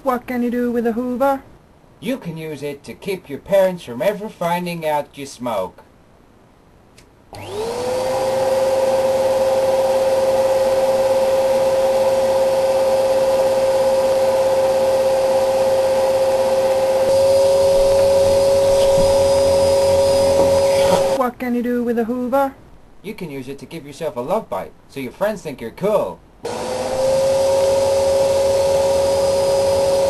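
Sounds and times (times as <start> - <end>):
vacuum cleaner motor whine: 7.3 - 21.2, 26.4 - 30.0.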